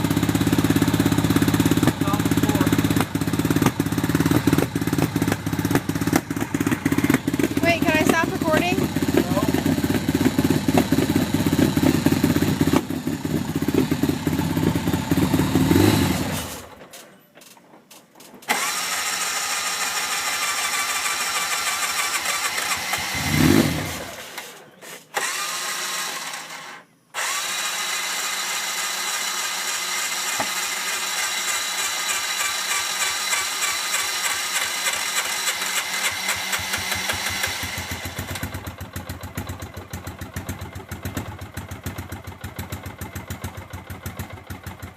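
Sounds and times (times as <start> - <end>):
engine running and revving: 0.0 - 16.8, 18.5 - 24.5, 27.2 - 39.6.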